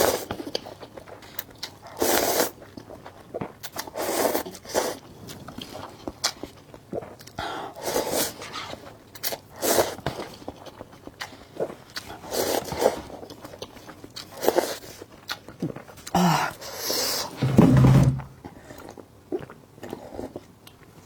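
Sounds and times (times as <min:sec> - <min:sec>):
chewing and mouth clicks: 0:00.0 - 0:07.7, 0:08.4 - 0:16.2, 0:18.4 - 0:21.0
noodle slurping: 0:01.9 - 0:02.6, 0:07.8 - 0:10.1, 0:12.0 - 0:13.2, 0:14.2 - 0:15.1.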